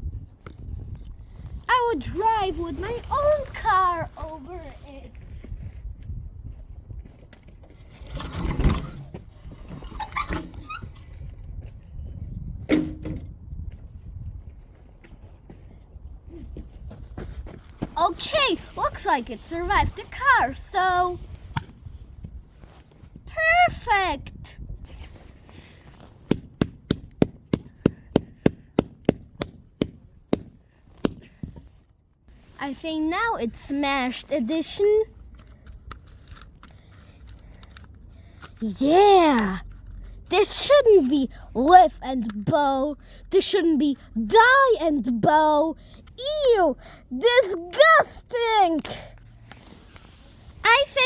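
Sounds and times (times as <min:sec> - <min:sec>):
scattered plastic clicks: 0:35.2 - 0:40.4.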